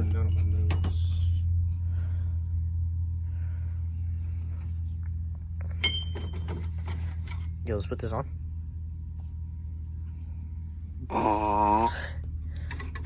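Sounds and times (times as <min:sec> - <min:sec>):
steady low hum: 0:00.0 - 0:13.0
sharp metallic clink: 0:05.8 - 0:06.5.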